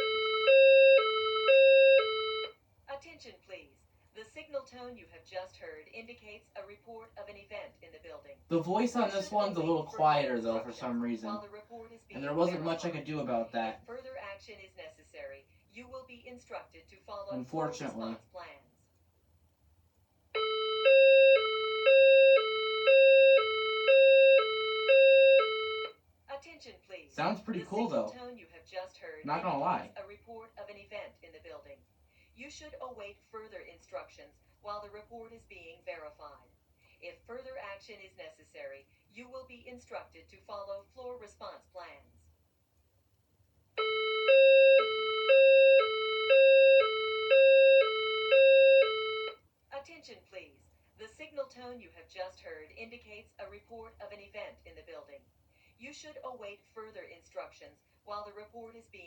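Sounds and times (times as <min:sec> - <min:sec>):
hi-lo fire alarm tone: 0:00.0 - 0:02.5, 0:20.4 - 0:26.0, 0:43.8 - 0:49.4
alternating two-note alert tone: 0:43.8 - 0:49.3.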